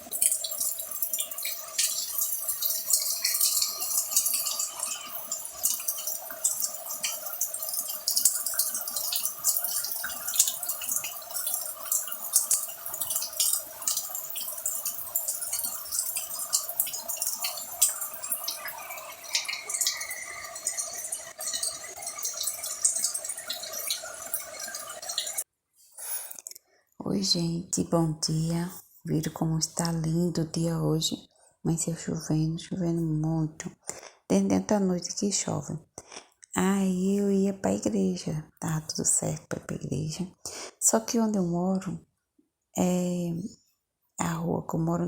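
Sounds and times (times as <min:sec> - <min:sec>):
drops dripping and splashing: 0:00.0 - 0:25.4.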